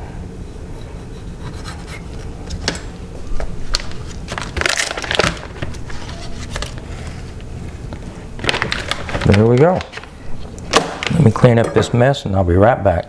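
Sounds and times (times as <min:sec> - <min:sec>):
low steady hum: 0:00.0 - 0:13.0
crinkling rustle: 0:02.0 - 0:11.5.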